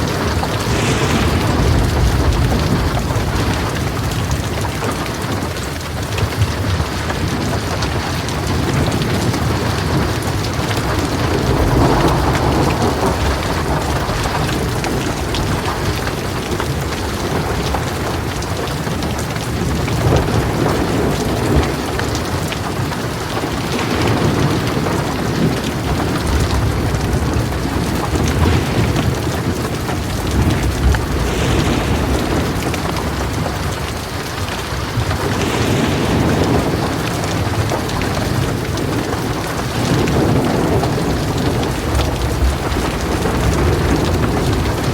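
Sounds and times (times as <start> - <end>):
heavy rain: 0.0 - 44.9
thunder rumbling: 0.0 - 44.9.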